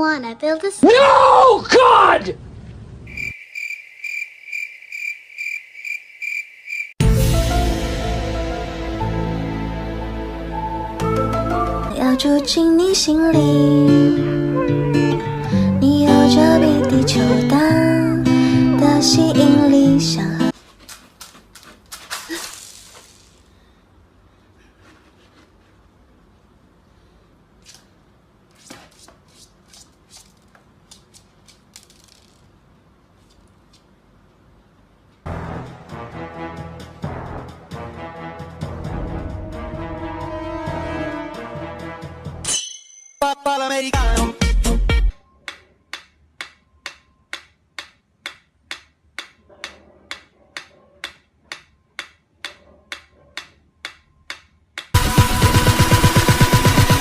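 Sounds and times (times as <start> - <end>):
loud electronic music: 55.0 - 57.0.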